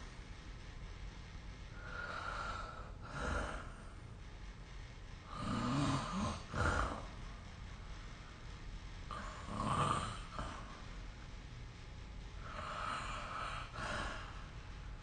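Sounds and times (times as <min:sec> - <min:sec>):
person snoring: 0:05.3 - 0:07.1, 0:09.1 - 0:10.7, 0:12.4 - 0:14.3.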